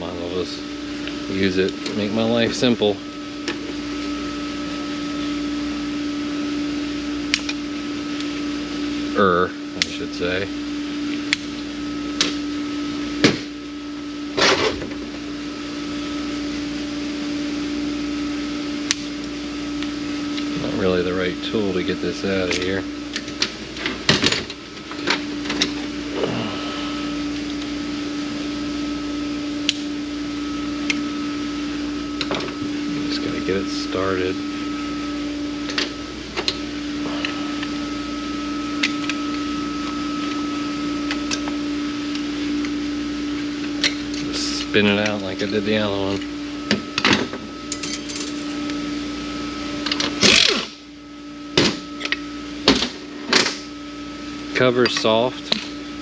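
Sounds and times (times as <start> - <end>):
steady shop hum: 0.0 - 56.0
small motor humming: 25.6 - 28.4, 32.2 - 42.8
metal tools clanking: 47.7 - 48.6.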